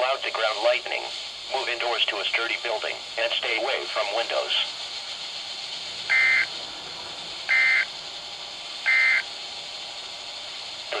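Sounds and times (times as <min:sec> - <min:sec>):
radio receiver hiss: 0:00.0 - 0:11.0
warbling data tones: 0:05.7 - 0:08.0, 0:08.8 - 0:09.3.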